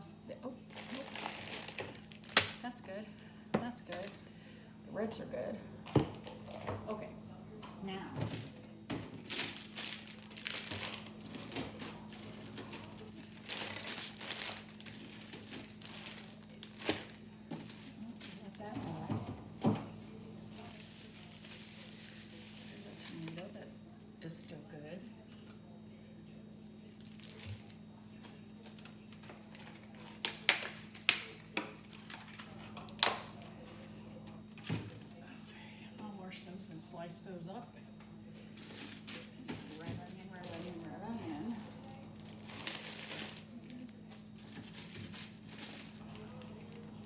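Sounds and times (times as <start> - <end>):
low steady hum: 0.0 - 47.0
plastic packaging crinkling: 0.7 - 3.3, 9.2 - 18.9, 19.5 - 23.6, 26.9 - 27.8, 38.6 - 47.0.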